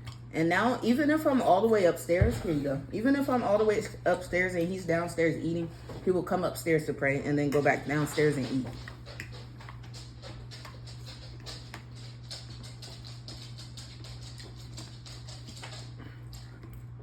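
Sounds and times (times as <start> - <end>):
steady low hum: 0.0 - 17.0
chewing: 7.5 - 17.0.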